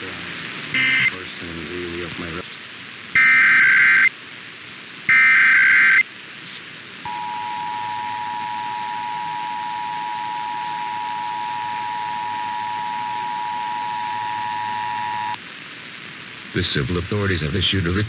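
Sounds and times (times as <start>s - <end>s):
two-tone attention signal: 0.8s - 1.1s, 7.1s - 15.4s
harsh data burst screech: 0.8s - 1.2s, 3.2s - 4.1s, 5.1s - 6.0s.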